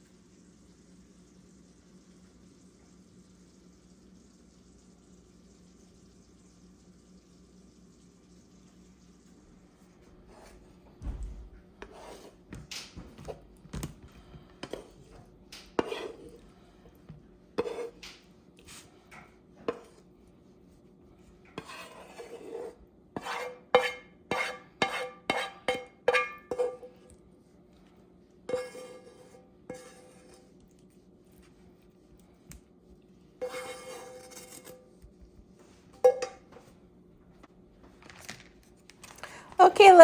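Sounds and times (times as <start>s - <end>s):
dishes and cutlery clattering: 24.9s - 27.0s, 36.0s - 36.6s.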